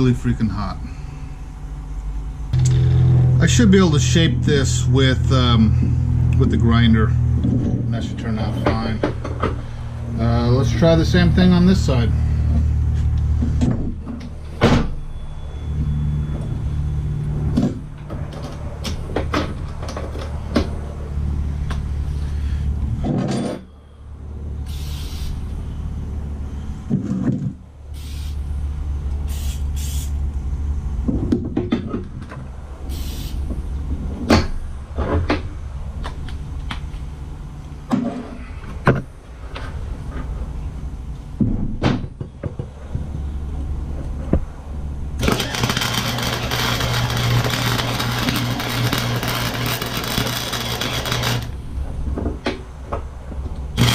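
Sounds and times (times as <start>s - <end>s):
welder buzzing: 2.5s - 3.7s, 24.6s - 25.5s, 45.2s - 51.7s.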